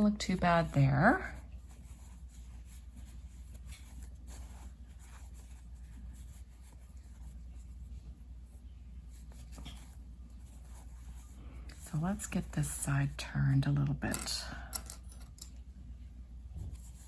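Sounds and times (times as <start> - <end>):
fabric rustling and scratching: 0.0 - 12.9
steady low hum: 0.0 - 17.0.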